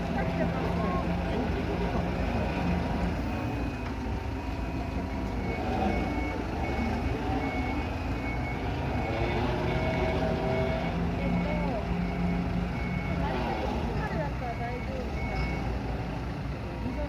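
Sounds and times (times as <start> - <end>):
engine rumbling: 0.0 - 17.0
warning alarm beeping: 4.4 - 15.9.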